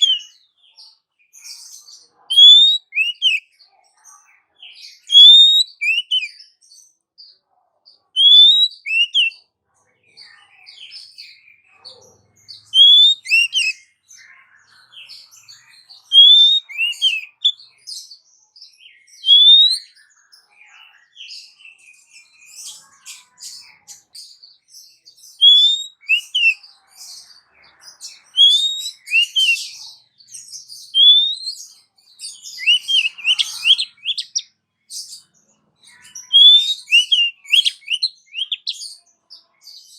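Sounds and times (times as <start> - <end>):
bird whistled calls: 0.0 - 0.3, 2.3 - 3.4, 5.0 - 6.4, 8.2 - 9.4, 12.7 - 13.8, 16.1 - 17.6, 19.1 - 19.9, 25.4 - 26.6, 28.3 - 29.9, 30.8 - 31.7, 32.5 - 34.5, 35.9 - 38.9
scratchy bird twittering: 0.0 - 0.4, 1.4 - 3.4, 4.9 - 6.4, 8.2 - 9.4, 11.8 - 13.9, 15.1 - 17.6, 19.2 - 19.8, 25.4 - 39.0.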